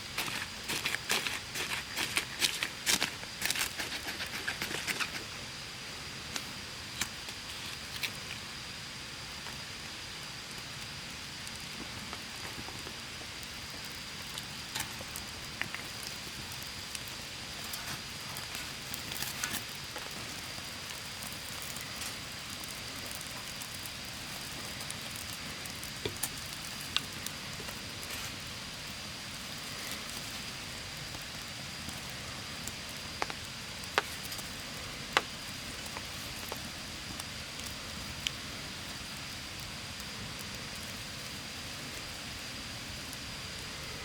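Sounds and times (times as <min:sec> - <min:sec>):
wood fire crackling: 0:00.0 - 0:44.0.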